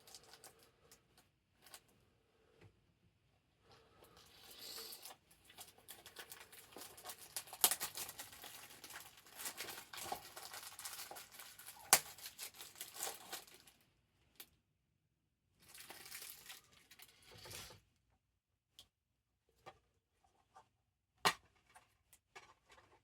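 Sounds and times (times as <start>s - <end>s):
plastic wrap crackling: 5.0s - 13.8s, 15.6s - 17.6s
plastic wrap snapping: 5.5s - 13.7s.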